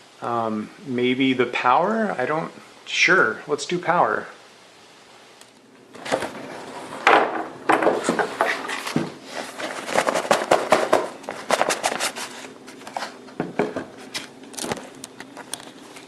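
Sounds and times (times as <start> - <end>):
box and packaging handling: 5.9 - 16.0.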